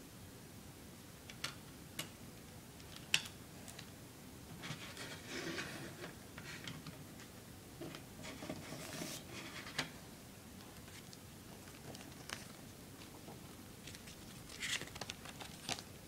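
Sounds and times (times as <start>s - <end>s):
packaging rustling: 10.8s - 16.0s.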